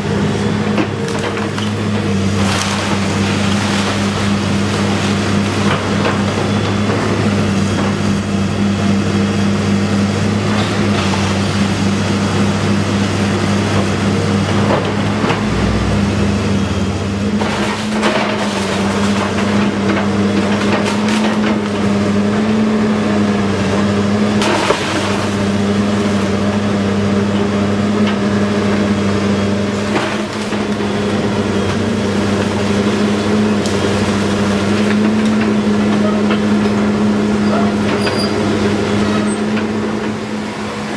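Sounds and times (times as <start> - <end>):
demolition machine engine running: 0.0 - 40.9
house cracking and crashing: 0.8 - 11.8, 17.3 - 22.0, 24.2 - 26.5.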